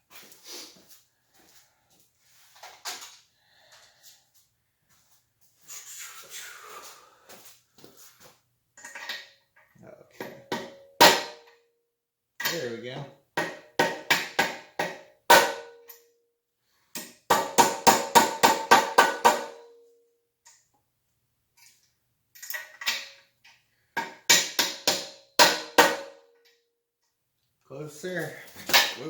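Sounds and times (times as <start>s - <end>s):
hammer striking metal: 10.2s - 11.5s, 13.4s - 15.9s, 17.0s - 19.7s, 24.0s - 26.3s.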